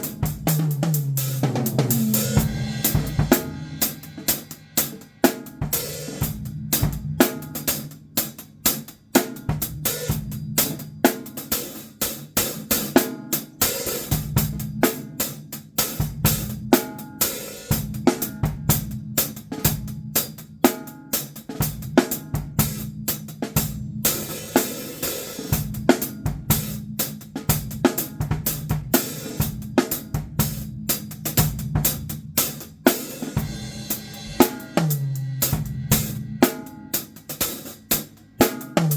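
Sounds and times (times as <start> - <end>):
snare and bass drum strikes: 0.0 - 7.7, 21.5 - 38.9
cymbals and hi-hat ringing: 0.0 - 38.9.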